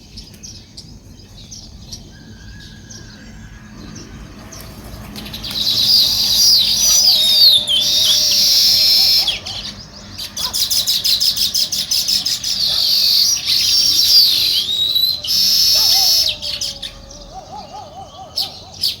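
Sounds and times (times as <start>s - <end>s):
sparrows chirping: 0.0s - 19.0s
low wavering bird call: 5.3s - 19.0s.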